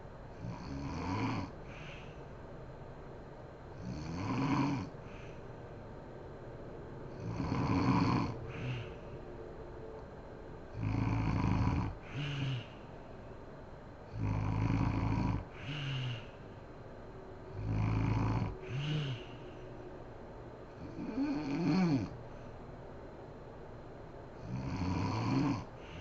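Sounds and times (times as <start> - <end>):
woman snoring: 0.4 - 2.2, 3.8 - 5.4, 7.1 - 9.0, 10.7 - 12.8, 14.1 - 16.4, 17.5 - 19.5, 20.8 - 22.2, 24.4 - 26.0.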